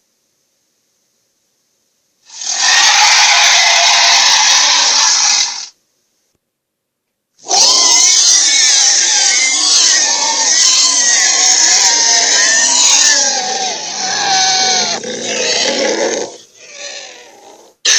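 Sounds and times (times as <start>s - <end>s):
dragon growl with wavering pitch: 9.0s - 17.8s.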